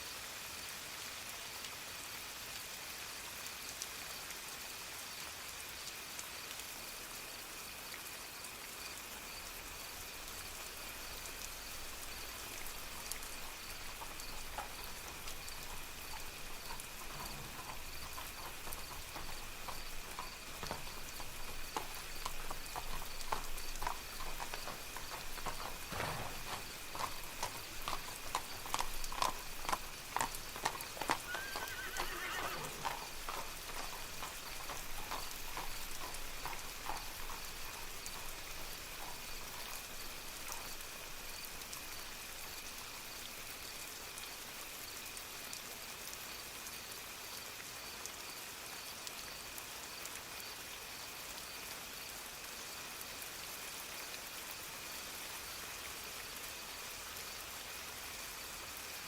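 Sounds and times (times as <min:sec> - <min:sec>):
steady rain: 0:00.0 - 0:59.0
horse hooves clip-clopping: 0:10.2 - 0:43.8
horse whinnying: 0:25.4 - 0:33.9.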